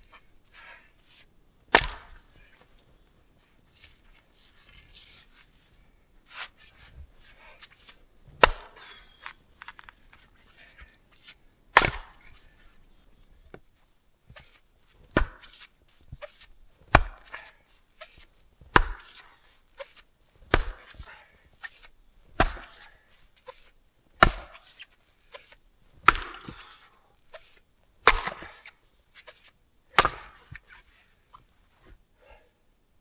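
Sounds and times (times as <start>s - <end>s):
axe chopping log: 1.7s - 2.3s, 8.4s - 9.0s, 11.7s - 12.4s, 15.1s - 15.7s, 16.9s - 21.0s, 22.3s - 23.6s, 24.2s - 24.8s, 25.4s - 30.8s.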